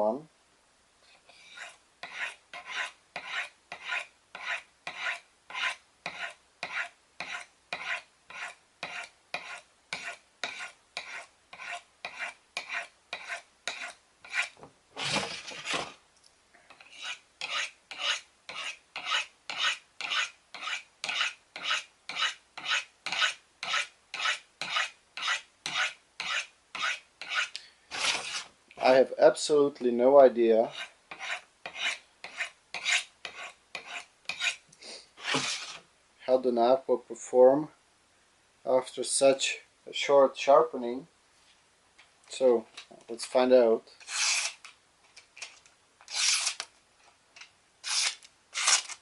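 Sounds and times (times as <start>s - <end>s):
knife rasping on sharpening rod: 1.3s - 14.6s, 16.8s - 28.5s, 30.7s - 34.6s, 35.2s - 35.8s, 44.0s - 44.6s.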